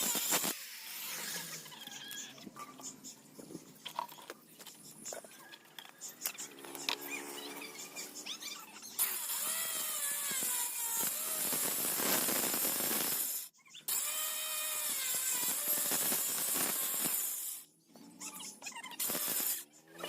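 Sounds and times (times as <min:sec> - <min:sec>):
power tool grinding: 0:06.3 - 0:17.6, 0:19.0 - 0:19.6.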